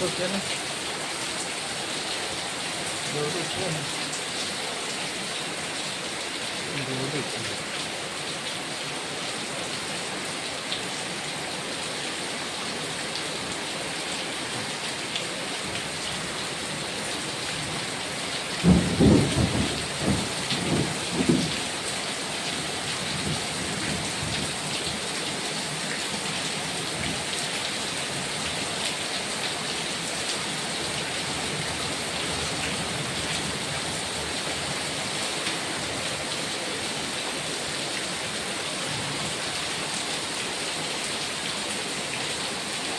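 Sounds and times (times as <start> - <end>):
heavy rain: 0.0 - 42.9
thunder: 18.6 - 21.5.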